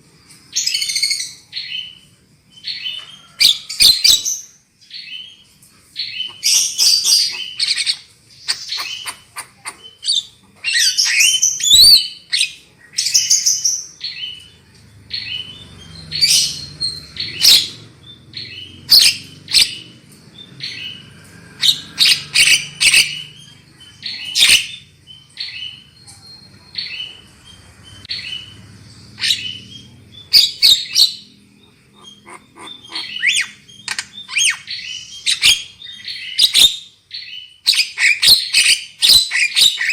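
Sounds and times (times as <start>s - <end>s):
bird harsh chirps and squawks: 6.0s - 14.4s, 15.1s - 39.9s.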